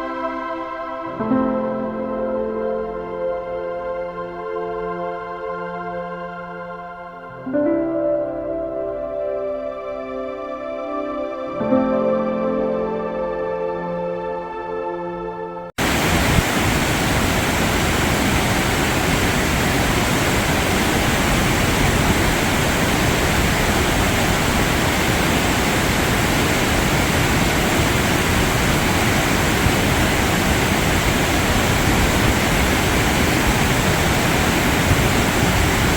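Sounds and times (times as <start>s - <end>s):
background music: 0.0s - 15.7s
waterfall roaring: 15.8s - 35.9s.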